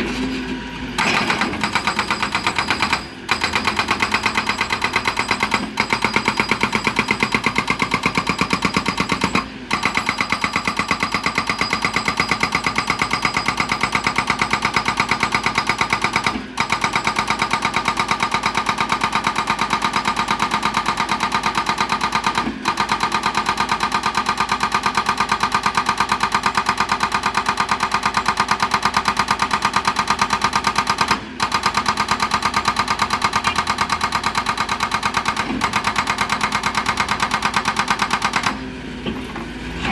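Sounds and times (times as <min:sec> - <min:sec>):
hydraulic breaker hammering stones: 0:01.0 - 0:39.9.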